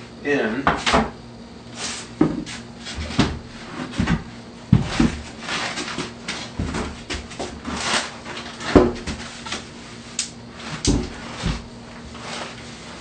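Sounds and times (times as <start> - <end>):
shower base scraping and sliding: 1.7 - 13.0
dull knocks: 2.2 - 5.4, 8.7 - 9.2.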